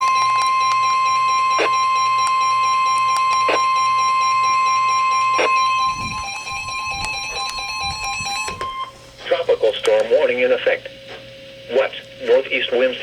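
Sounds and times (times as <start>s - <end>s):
loud steady alert beep: 0.0s - 9.0s.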